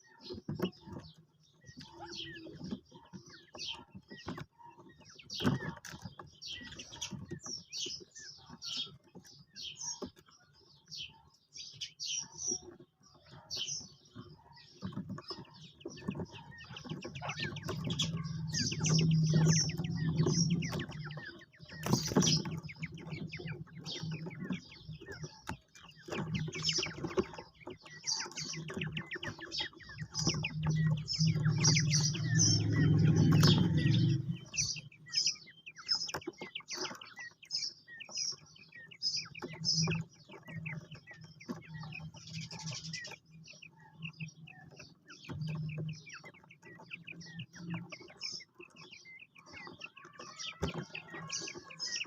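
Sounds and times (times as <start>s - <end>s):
quail chirping: 0.0s - 52.0s
low rumble: 30.2s - 34.8s.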